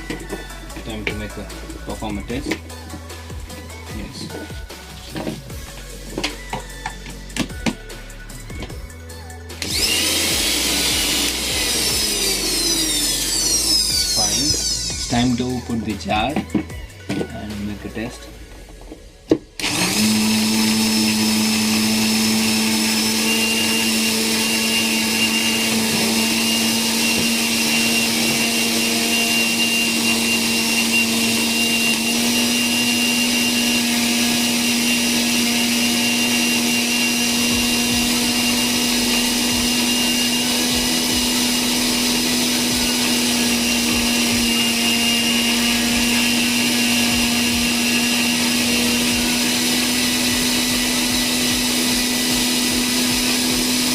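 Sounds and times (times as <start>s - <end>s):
mixer grinder motor humming: 9.5s - 17.8s, 19.6s - 53.9s.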